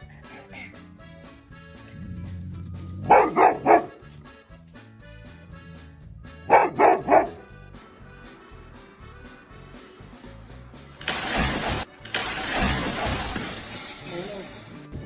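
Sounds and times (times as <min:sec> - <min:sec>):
quiet background music: 0:00.0 - 0:15.0
dog barking: 0:02.8 - 0:04.1, 0:06.5 - 0:07.5.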